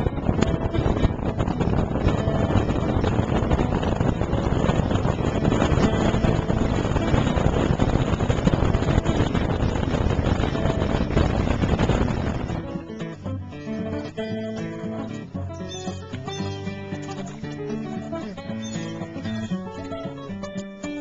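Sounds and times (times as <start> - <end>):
wind buffeting microphone: 0.0 - 15.6
motorboat engine running: 0.0 - 20.6.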